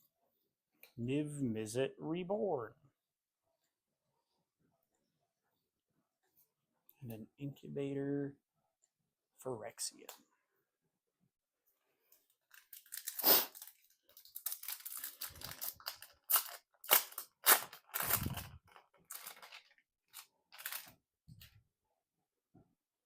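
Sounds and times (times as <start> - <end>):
wrapper tearing and crinkling: 12.5 - 21.0.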